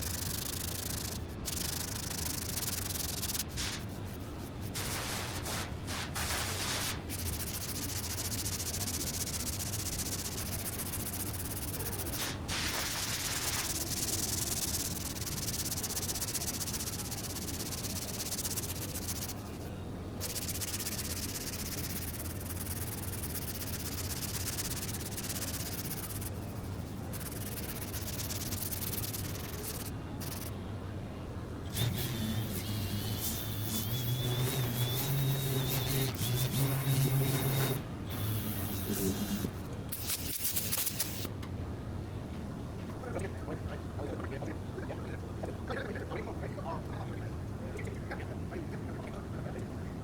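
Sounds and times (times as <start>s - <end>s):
sanding body filler: 0.0s - 19.6s, 20.2s - 30.5s, 31.7s - 41.3s.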